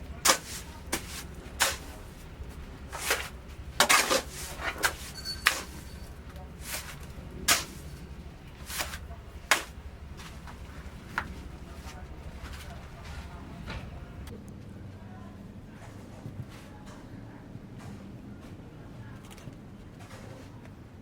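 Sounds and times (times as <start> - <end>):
low steady hum: 0.0 - 14.3
sharp knocks and clanks: 0.0 - 14.3
high ringing tone: 5.1 - 6.1.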